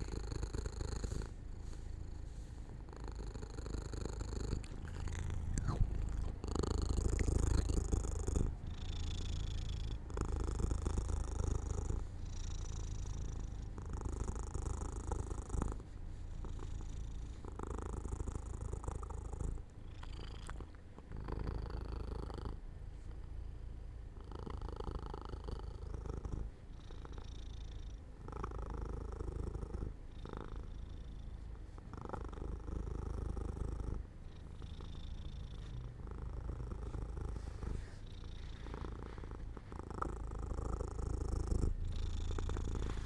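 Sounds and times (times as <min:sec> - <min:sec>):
cat purring: 0:00.0 - 0:43.0.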